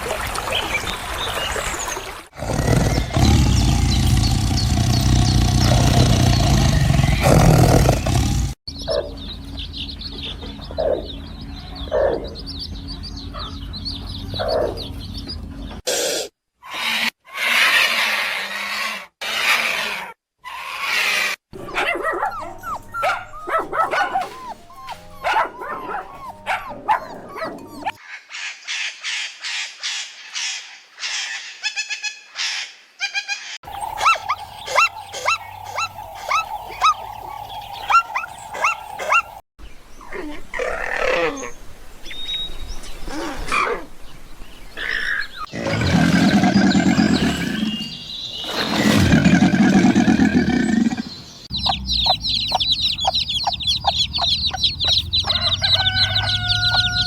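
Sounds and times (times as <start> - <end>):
loud low animal call: 2.4 - 8.6, 48.8 - 57.0
animal calls and high chirps: 2.4 - 9.2, 16.6 - 39.4, 44.8 - 57.0.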